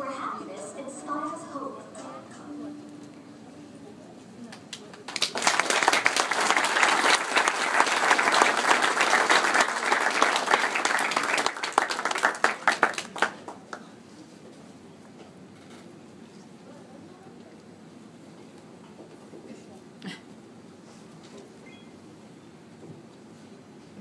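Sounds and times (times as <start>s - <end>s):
audience applauding: 4.7s - 13.8s.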